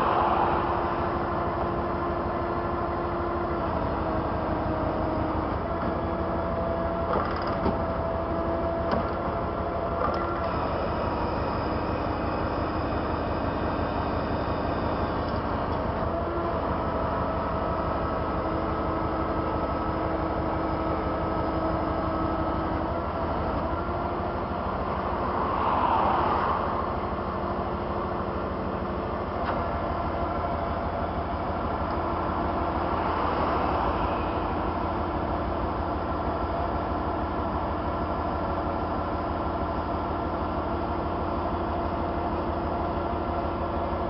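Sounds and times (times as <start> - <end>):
truck diesel engine running: 0.0 - 7.0, 26.5 - 44.0.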